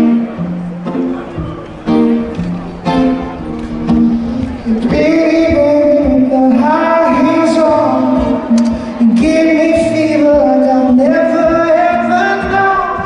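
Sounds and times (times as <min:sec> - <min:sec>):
instrumental backing music: 0:00.0 - 0:13.0
person singing long notes: 0:04.2 - 0:13.0.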